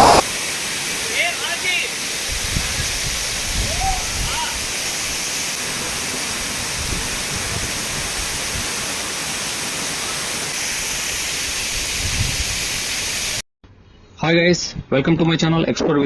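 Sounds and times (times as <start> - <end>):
waterfall roaring: 0.0 - 2.2, 5.5 - 10.6.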